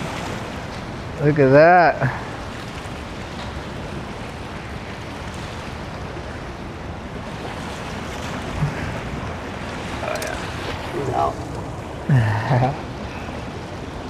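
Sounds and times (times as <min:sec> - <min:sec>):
river water: 0:00.0 - 0:14.0.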